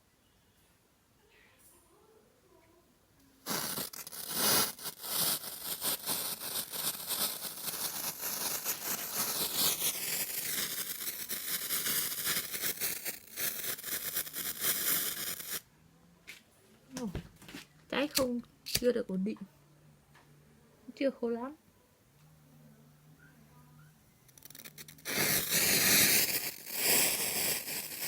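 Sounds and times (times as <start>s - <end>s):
smoke mixture burning with hiss: 3.4s - 15.6s, 24.3s - 28.0s
faint wavering whistle: 22.7s - 24.2s.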